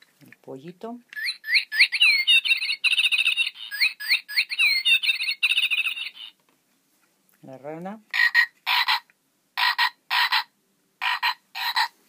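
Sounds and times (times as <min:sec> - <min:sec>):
toy chick peeping: 0:01.1 - 0:06.4, 0:08.1 - 0:12.0.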